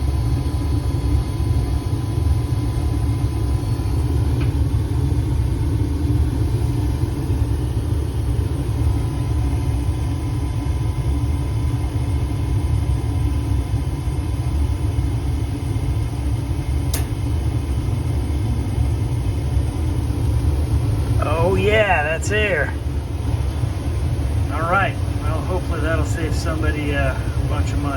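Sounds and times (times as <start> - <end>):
faint steady hum: 0.0 - 27.9
gas furnace rumbling: 0.0 - 27.9
sharp click: 16.9 - 17.2.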